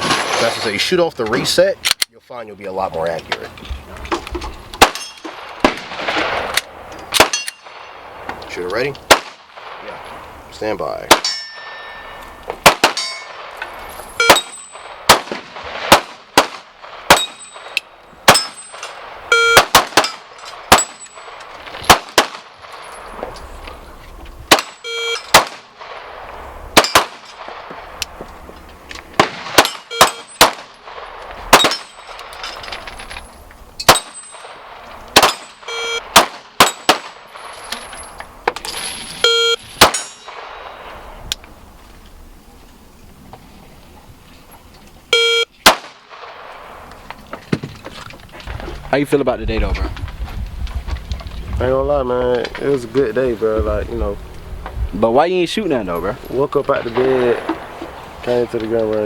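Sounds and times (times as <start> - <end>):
pistol shots: 4.8 - 8.2, 9.0 - 9.9, 11.1 - 11.8, 12.6 - 22.9, 24.5 - 28.2, 29.2 - 32.3, 33.8 - 37.6, 39.7 - 41.0, 45.6 - 46.8
metallic ringing tones: 11.2 - 12.4, 13.0 - 15.0, 17.2 - 21.4, 29.6 - 30.4, 38.8 - 40.9.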